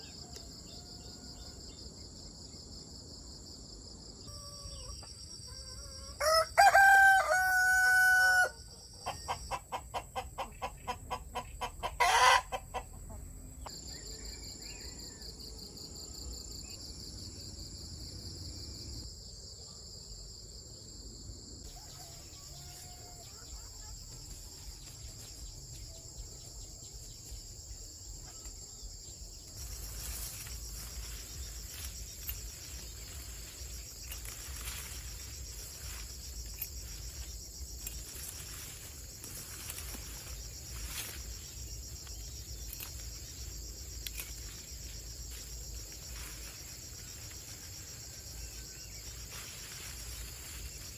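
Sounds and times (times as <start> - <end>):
rooster crowing: 5.6 - 8.6, 12.0 - 12.6, 21.7 - 23.5
insect trilling: 28.8 - 50.9.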